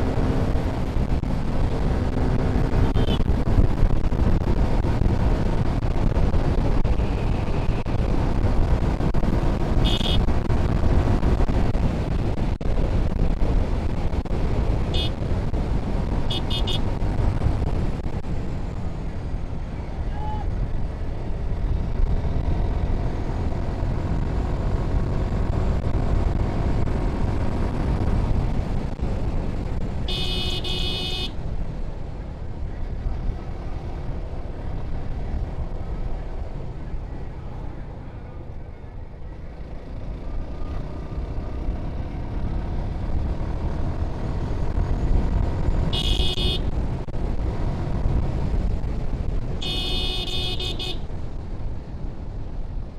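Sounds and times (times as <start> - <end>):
vehicle horn tooting: 2.9 - 3.2, 9.8 - 10.2, 16.3 - 16.8, 30.1 - 31.3, 45.9 - 46.7, 49.6 - 51.0.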